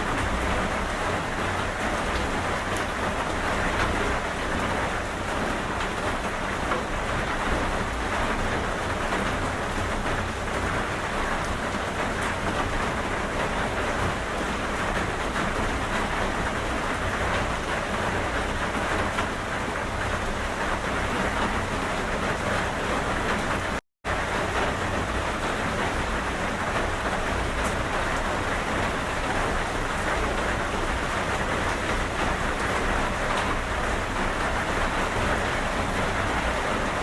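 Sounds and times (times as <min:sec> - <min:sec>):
steady rain falling: 0:00.0 - 0:37.0.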